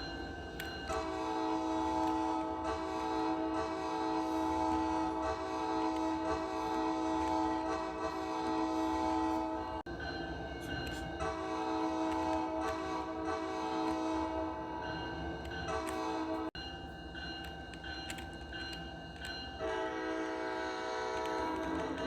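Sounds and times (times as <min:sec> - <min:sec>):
weaker horn sound: 0:00.9 - 0:09.8, 0:11.2 - 0:14.7, 0:19.6 - 0:22.0
train horn sounding a chord: 0:00.9 - 0:09.9, 0:10.9 - 0:14.9, 0:15.6 - 0:16.6, 0:19.6 - 0:22.0.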